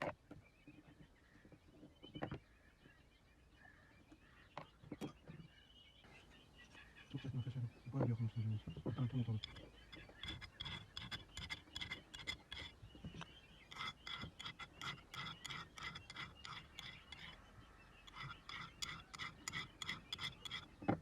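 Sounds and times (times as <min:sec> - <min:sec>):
faint scratching: 0:08.0 - 0:17.5, 0:18.1 - 0:21.0.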